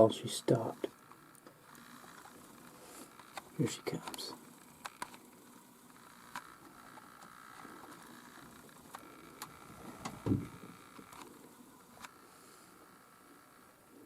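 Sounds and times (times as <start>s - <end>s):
dull low thump: 10.1s - 10.6s.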